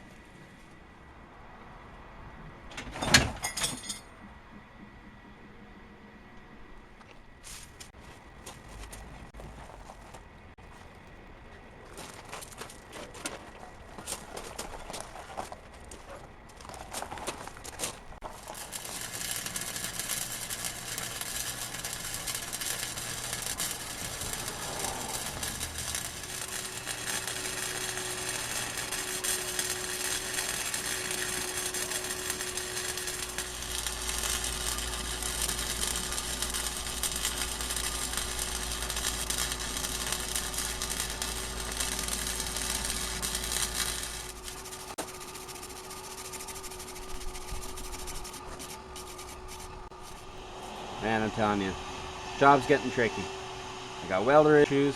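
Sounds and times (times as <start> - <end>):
welder arc crackling and buzzing: 16.6 - 54.9.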